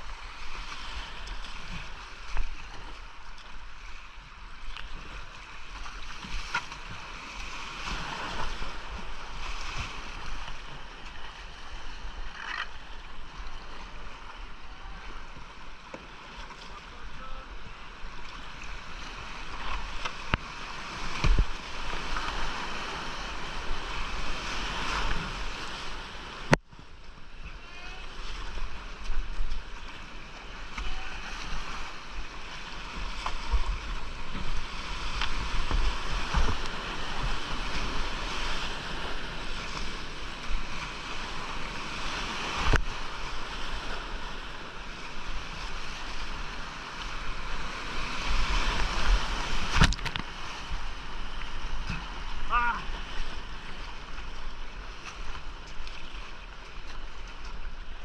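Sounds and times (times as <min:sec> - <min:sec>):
rushing whitewater: 0:27.2 - 0:58.0.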